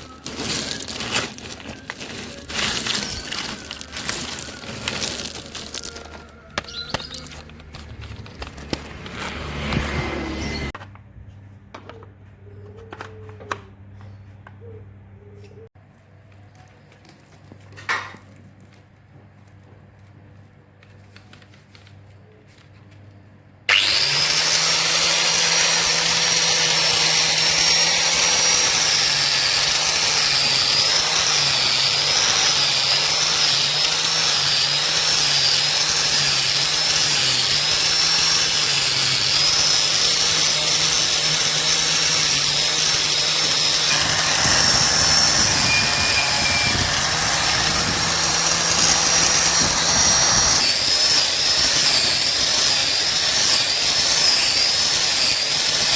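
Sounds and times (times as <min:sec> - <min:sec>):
electric power tool running: 0:00.0 - 0:10.8, 0:23.7 - 0:55.9.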